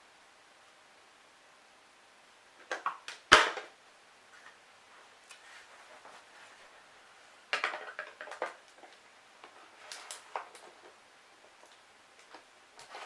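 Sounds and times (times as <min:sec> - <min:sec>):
hard objects clicking and rattling: 0:07.5 - 0:09.0.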